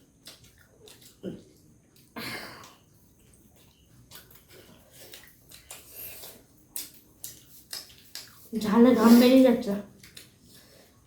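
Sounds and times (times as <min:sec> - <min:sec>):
person chewing: 0:00.0 - 0:08.6, 0:09.9 - 0:11.0
breathing: 0:10.5 - 0:11.0.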